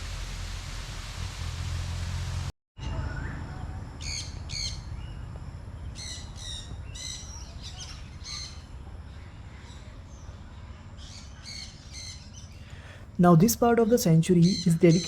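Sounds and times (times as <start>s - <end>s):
steady low rumble: 0.0s - 2.5s.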